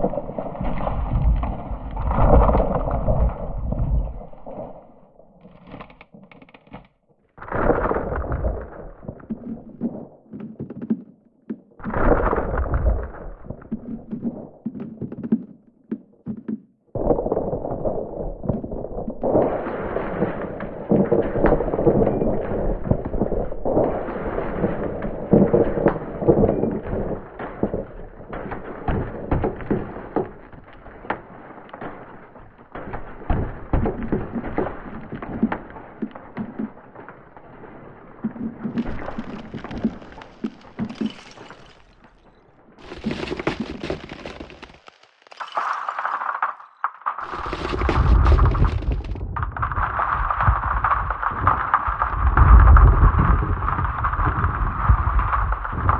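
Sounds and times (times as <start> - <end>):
ice crashing with deep rumble: 0.0 - 5.2, 7.4 - 10.1, 11.8 - 14.5, 17.0 - 46.5, 47.1 - 55.9
ice crackling and cracking: 0.0 - 11.0, 17.0 - 55.9.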